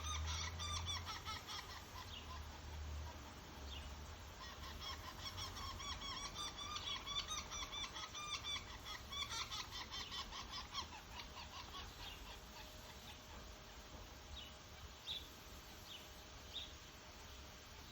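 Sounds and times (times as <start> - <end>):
bird calling in rapid notes: 0.0 - 2.6, 4.4 - 13.8.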